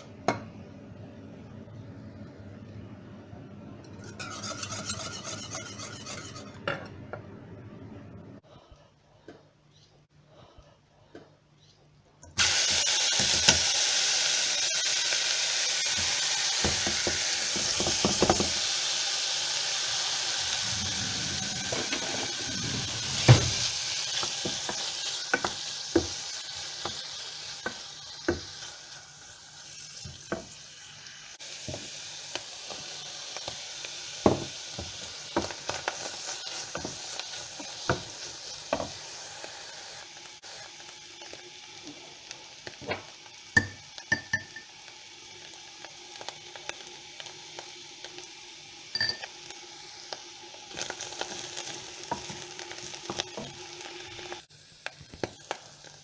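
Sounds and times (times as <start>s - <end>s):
utensil scraping a pan: 3.9s - 6.7s
food sizzling in a pan: 12.4s - 56.0s.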